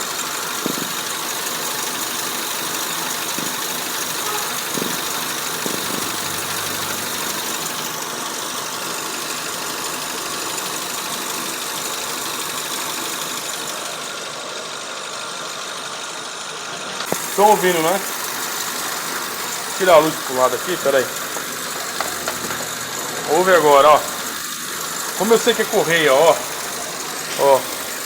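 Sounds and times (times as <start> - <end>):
car engine idling: 0.0 - 28.0
drive belt noise: 0.0 - 28.0.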